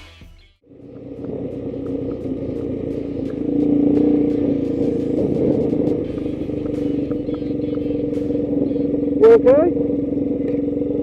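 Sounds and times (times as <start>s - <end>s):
atv engine running: 0.6s - 11.0s.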